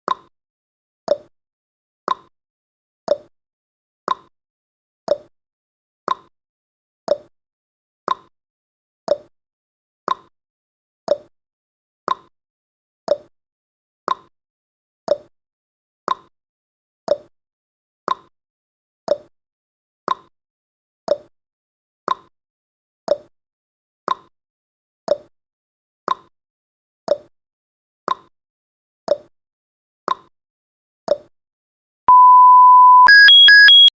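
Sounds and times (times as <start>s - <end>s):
high timer beep: 32.1s - 33.9s.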